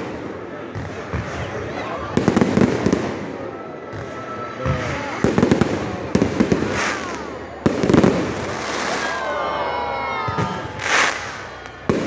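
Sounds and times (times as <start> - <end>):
steady background noise: 0.0 - 12.0
fireworks crackling pops: 2.2 - 9.2, 10.3 - 12.0.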